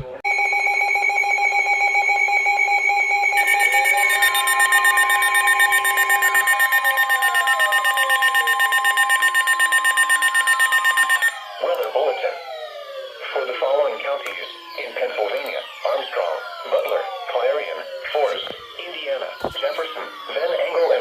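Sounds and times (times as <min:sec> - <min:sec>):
falling alert tone sweeps: 0:00.3 - 0:11.6
pulsing multi-tone alarm: 0:00.3 - 0:21.0
steady single alert tone: 0:03.2 - 0:11.4.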